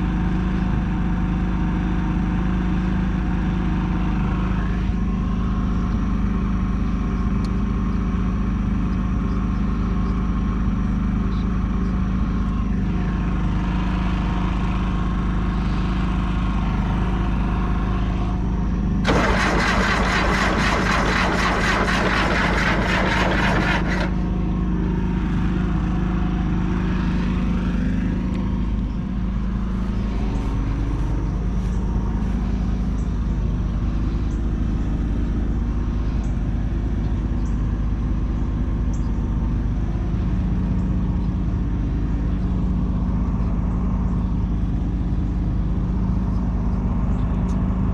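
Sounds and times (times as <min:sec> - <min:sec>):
bulldozer diesel engine running: 0:00.0 - 0:47.9
loud rattling clatter: 0:19.0 - 0:24.4.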